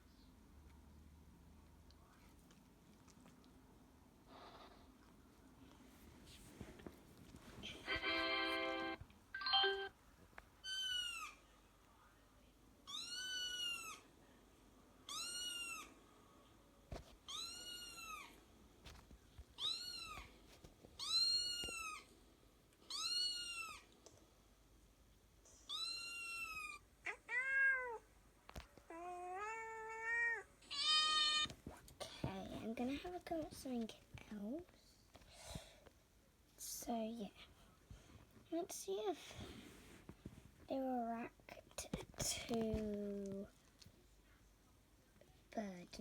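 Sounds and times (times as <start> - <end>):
cat meowing: 28.9 - 31.5.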